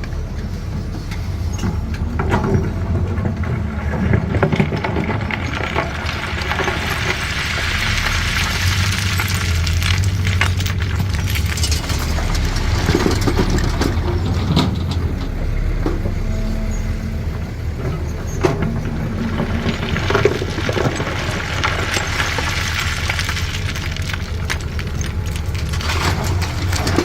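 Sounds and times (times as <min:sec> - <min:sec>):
sharp knocks and clatters: 0:00.0 - 0:16.5
excavator diesel engine running: 0:00.0 - 0:27.0.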